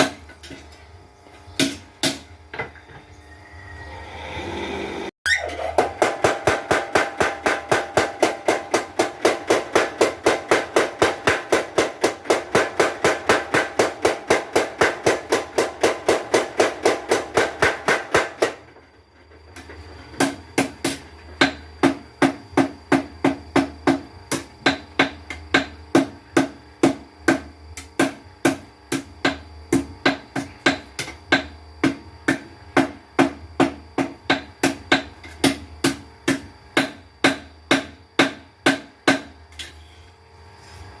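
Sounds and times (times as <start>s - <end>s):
low motor hum: 2.4s - 5.7s
power hammer pounding steel: 5.8s - 18.6s.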